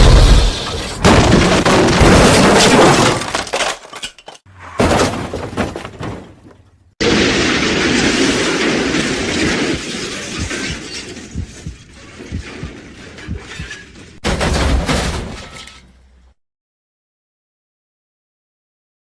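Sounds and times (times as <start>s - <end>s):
car crash: 0.0s - 11.4s, 13.8s - 16.1s
glass shattering: 0.0s - 15.9s
debris clattering: 0.0s - 16.1s.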